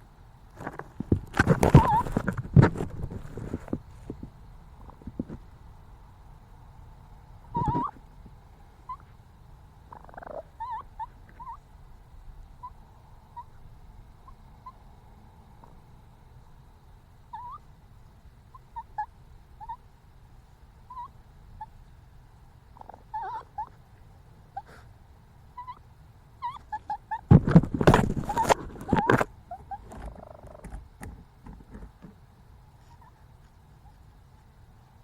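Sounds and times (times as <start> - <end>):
chirping animal calls: 1.6 - 2.3, 7.5 - 8.0, 8.8 - 9.2, 9.8 - 11.8, 12.4 - 15.0, 17.2 - 17.7, 18.5 - 19.9, 20.8 - 21.9, 22.7 - 23.9, 25.5 - 27.3, 28.2 - 30.7.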